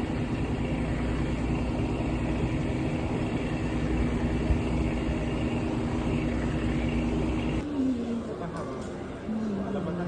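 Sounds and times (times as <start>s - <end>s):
boat engine humming: 0.0s - 7.6s.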